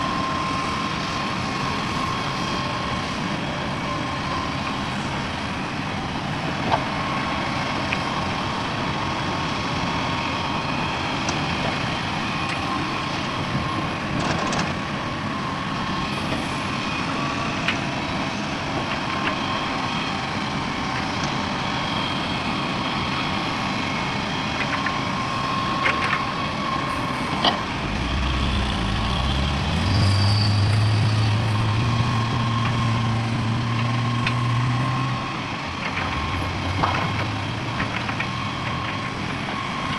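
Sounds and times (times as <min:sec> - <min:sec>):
diesel machinery running: 0:00.0 - 0:39.9
deep engine hum: 0:26.9 - 0:38.8.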